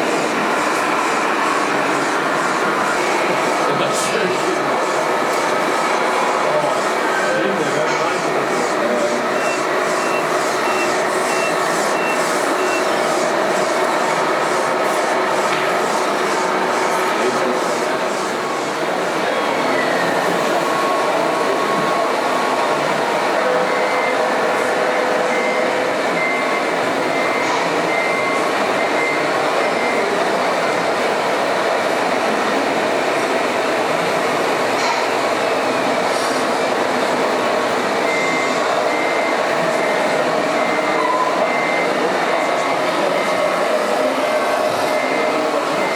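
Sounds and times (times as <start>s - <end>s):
hall noise: 0.0s - 27.2s.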